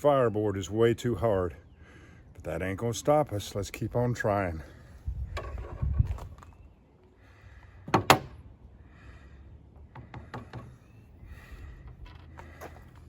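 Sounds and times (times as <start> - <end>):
sharp wooden knocks: 7.9 - 8.4, 9.9 - 10.8.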